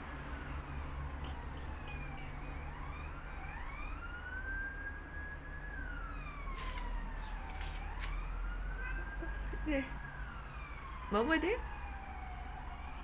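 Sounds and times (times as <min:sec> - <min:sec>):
steady low hum: 0:00.0 - 0:04.5
siren wailing: 0:00.1 - 0:13.0.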